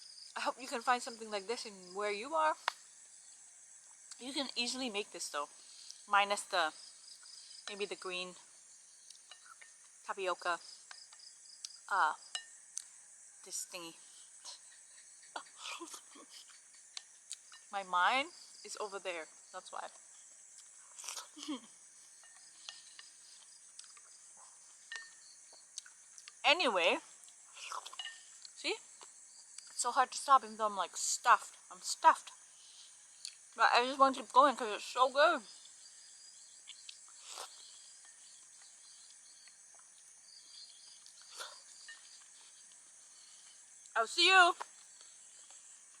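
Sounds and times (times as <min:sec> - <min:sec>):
crickets chirring: 0:00.0 - 0:46.0
eating sound: 0:20.0 - 0:26.4, 0:36.6 - 0:43.9.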